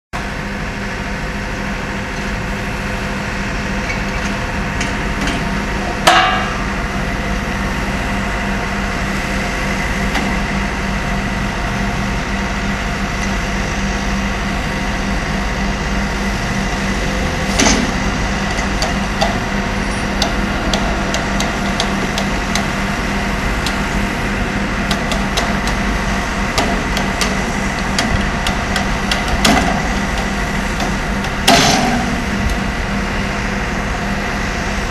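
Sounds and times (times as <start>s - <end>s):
heavy diesel engine running: 0.2s - 34.9s
sharp metal clanks: 6.1s - 6.8s.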